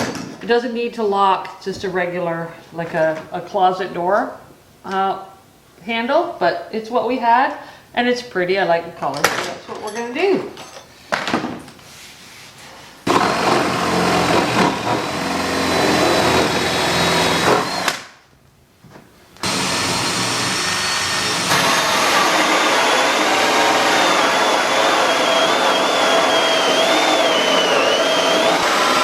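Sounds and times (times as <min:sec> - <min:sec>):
electric power tool whining: 0:13.1 - 0:18.0, 0:19.4 - 0:29.0.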